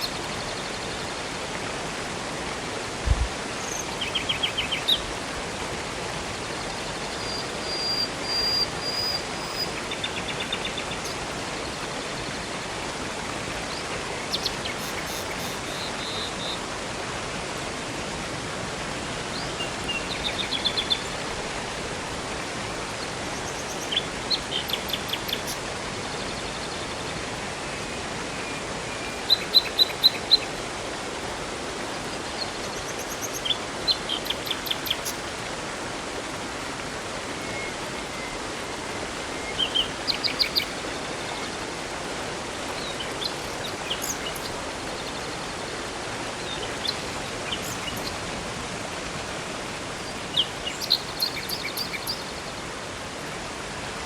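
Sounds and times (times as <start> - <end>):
rushing river water: 0.0 - 54.0
songbirds chirping: 6.5 - 16.6, 19.3 - 21.5, 22.9 - 30.6, 32.1 - 35.4, 37.4 - 41.6, 42.5 - 48.3, 49.9 - 52.6.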